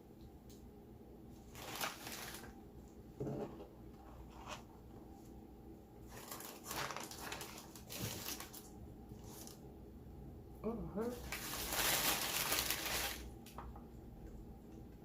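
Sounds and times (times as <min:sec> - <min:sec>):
paper food wrapping crinkling: 0:01.5 - 0:02.6, 0:06.0 - 0:09.6, 0:11.1 - 0:13.6.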